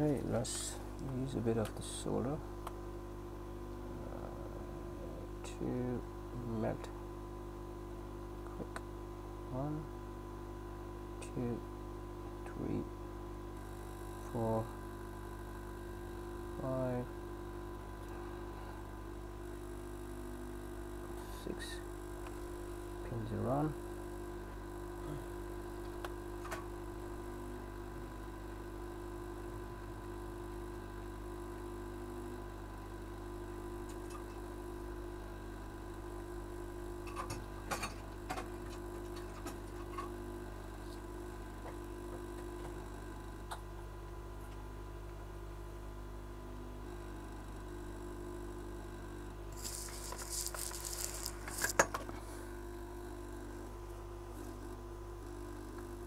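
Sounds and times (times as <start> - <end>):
electrical hum: 0.0 - 56.0
rustling and clicking of tools: 49.6 - 52.2.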